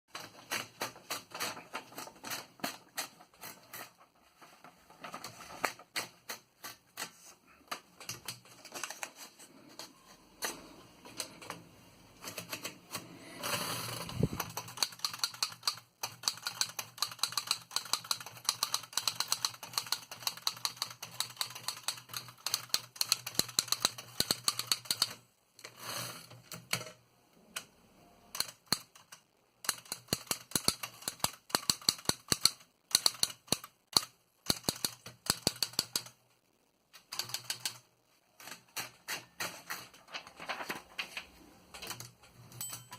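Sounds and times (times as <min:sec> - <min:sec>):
typewriter keys clacking: 0:14.1 - 0:25.1, 0:28.4 - 0:36.2, 0:37.0 - 0:37.8.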